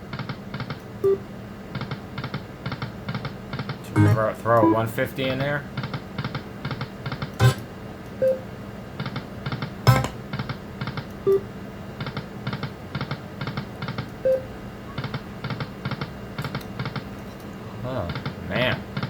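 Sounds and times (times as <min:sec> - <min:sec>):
sharp knocks: 0:07.4 - 0:07.6, 0:09.9 - 0:10.2
electronic reel ticks: 0:09.9 - 0:10.2.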